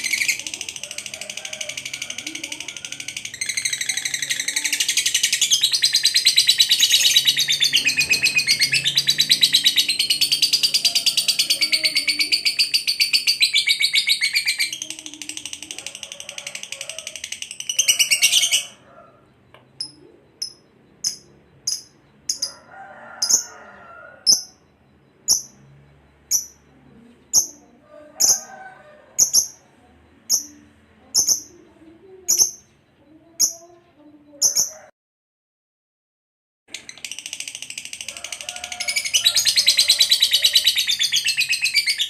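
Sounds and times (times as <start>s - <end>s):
bird chattering trill: 0.0s - 19.0s, 19.7s - 25.7s, 26.3s - 26.7s, 29.1s - 33.8s, 34.4s - 34.9s, 36.7s - 42.0s
sharp high bird chirps: 3.0s - 15.5s, 19.7s - 22.6s, 24.3s - 26.7s.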